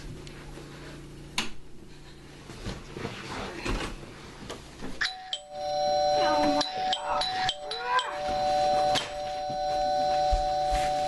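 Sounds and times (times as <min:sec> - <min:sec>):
two-note doorbell chime: 0:05.0 - 0:11.0.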